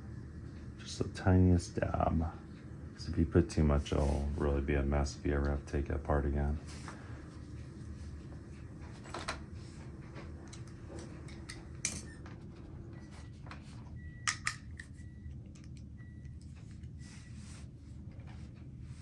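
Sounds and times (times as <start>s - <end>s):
low steady hum: 0.0s - 19.0s
small parts clicking and tapping: 14.2s - 15.9s.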